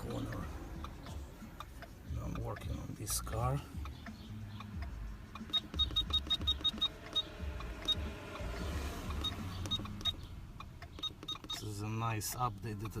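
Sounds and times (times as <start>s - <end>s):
short high electronic beeps: 5.4s - 8.1s, 11.0s - 11.6s.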